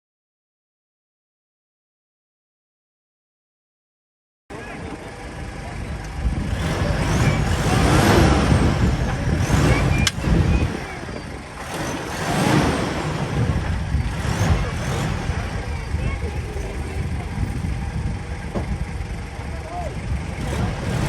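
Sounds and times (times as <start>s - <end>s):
engine revving under load: 4.9s - 21.0s
sharp click: 10.0s - 10.3s.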